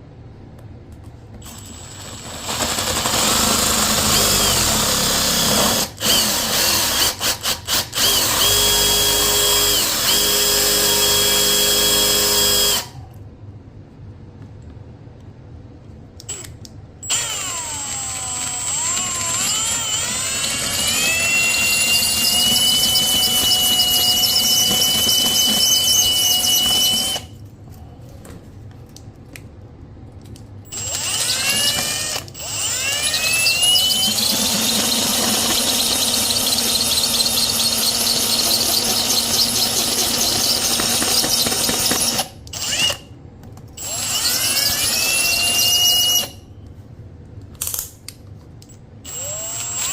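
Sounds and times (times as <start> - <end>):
electric drill whining: 1.4 - 13.0, 16.3 - 27.3, 30.7 - 43.0, 43.8 - 46.4, 49.1 - 49.9
drill grinding ceramic: 1.5 - 12.9, 17.0 - 27.3, 30.7 - 43.0, 43.8 - 46.4, 49.1 - 49.9.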